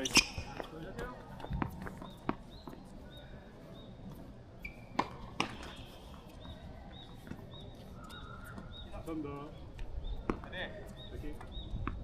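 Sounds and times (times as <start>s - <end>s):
ball bouncing on court: 4.9s - 5.8s, 10.2s - 10.6s, 11.4s - 12.0s.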